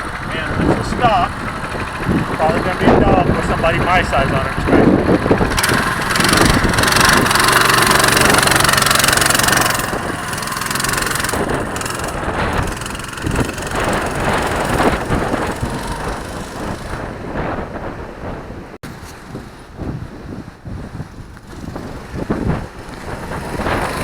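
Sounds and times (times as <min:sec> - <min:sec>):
minibike engine revving: 0:00.0 - 0:17.8, 0:20.8 - 0:24.0.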